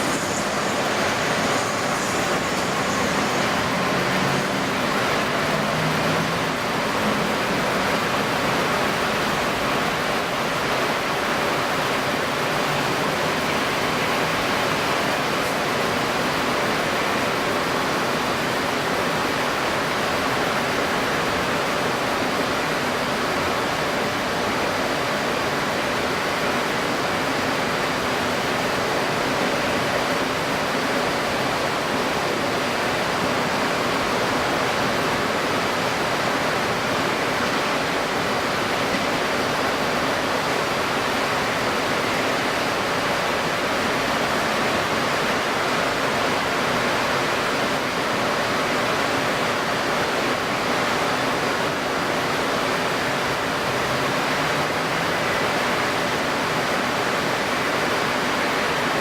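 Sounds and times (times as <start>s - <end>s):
strong wind rushing: 0.0s - 10.2s
wind-stirred water: 0.0s - 59.0s.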